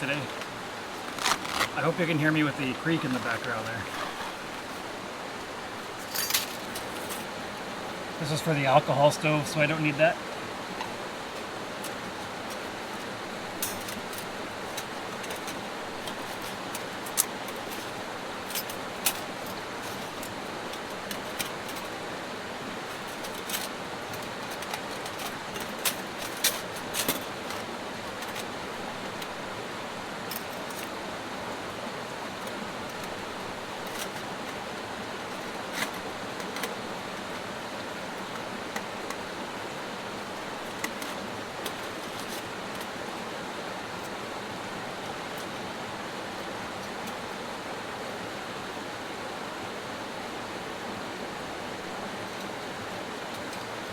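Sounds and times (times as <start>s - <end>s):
creek rushing: 0.0s - 24.4s
metal camp gear clinking: 1.0s - 4.8s, 5.9s - 7.3s, 11.8s - 22.0s, 22.9s - 29.4s, 30.3s - 31.0s.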